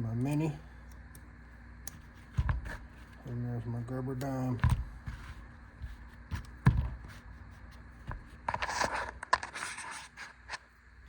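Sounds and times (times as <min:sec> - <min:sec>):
scraping and rustling: 0:05.0 - 0:10.7.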